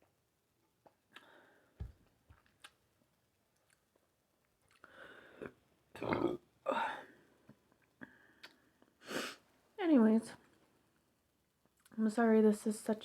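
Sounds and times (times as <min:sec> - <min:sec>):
breaths: 0:01.1 - 0:01.8, 0:04.8 - 0:05.6, 0:06.7 - 0:09.5
lip clicks: 0:08.4 - 0:08.6.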